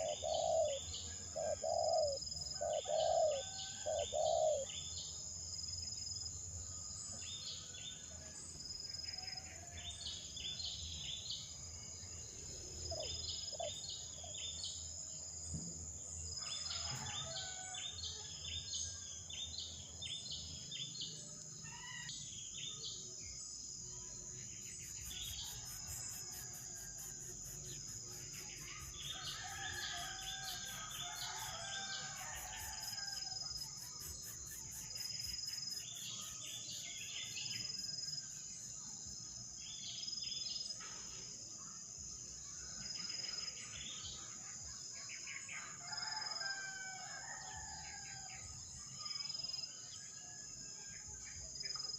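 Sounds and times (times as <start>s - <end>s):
high-pitched insect drone: 24.7s - 36.7s.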